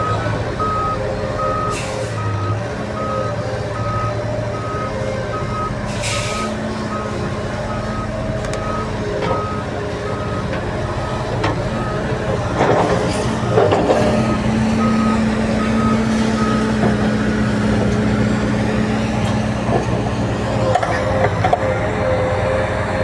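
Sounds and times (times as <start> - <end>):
reversing alarm beeps: 0.0 - 12.2, 12.8 - 16.8
heavy vehicle engine running: 0.0 - 23.0.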